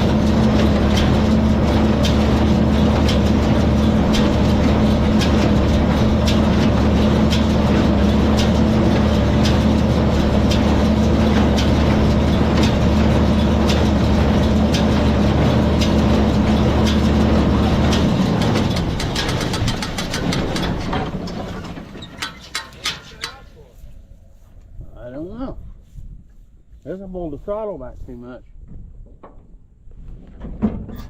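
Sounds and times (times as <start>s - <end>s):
tractor engine running: 0.0s - 24.0s
regular ticking: 0.6s - 23.6s
scattered clicks: 17.9s - 23.6s.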